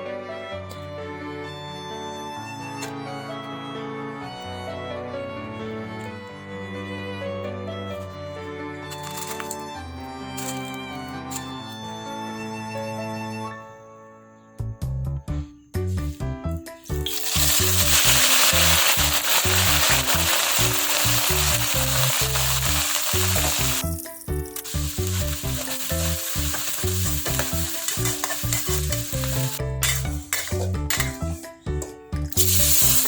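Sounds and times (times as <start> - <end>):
background music: 0.0 - 33.0
food sizzling in a hot pan: 16.9 - 31.1, 32.3 - 33.0.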